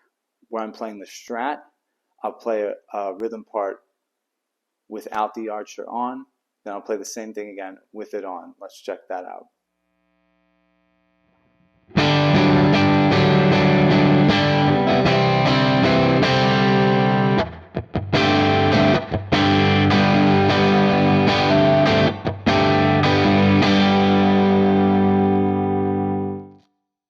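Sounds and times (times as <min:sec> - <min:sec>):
electric guitar strumming: 0:11.9 - 0:26.5.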